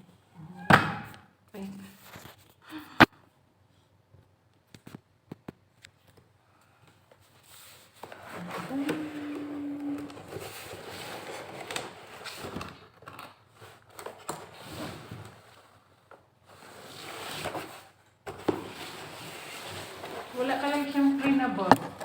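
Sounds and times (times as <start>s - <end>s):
packaging rustling: 7.2s - 22.0s.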